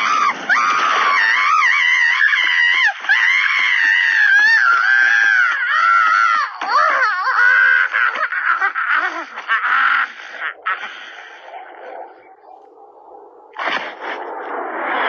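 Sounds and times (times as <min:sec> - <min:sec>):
high-pitched cartoon voice crying: 0:06.6 - 0:10.8.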